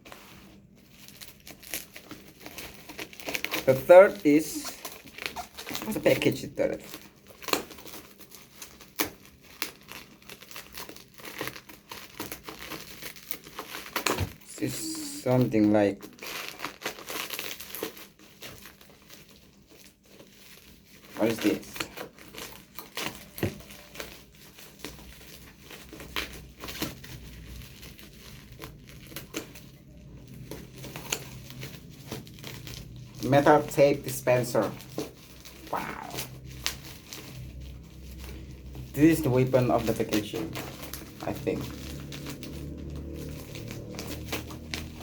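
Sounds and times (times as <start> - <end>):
package wrapping crinkling: 0.0 - 45.0
sharp crackles: 6.8 - 15.4, 20.0 - 45.0.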